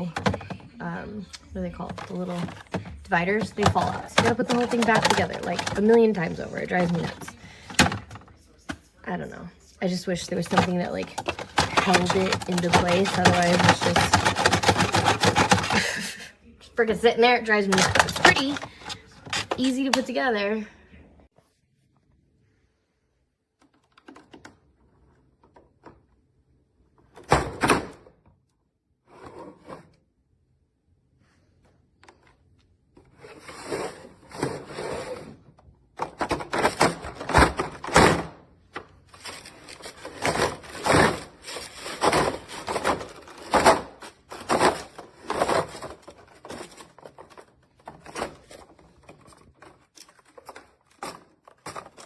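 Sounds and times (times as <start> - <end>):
hard plastic parts clattering: 0.0 - 9.0, 9.8 - 16.2, 17.0 - 20.3, 33.0 - 52.0.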